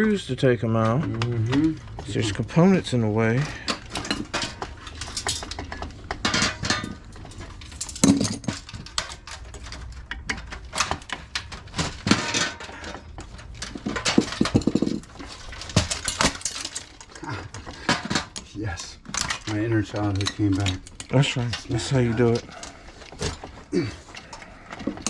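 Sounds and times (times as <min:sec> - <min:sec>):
hand tools clinking on metal: 0:00.0 - 0:25.0.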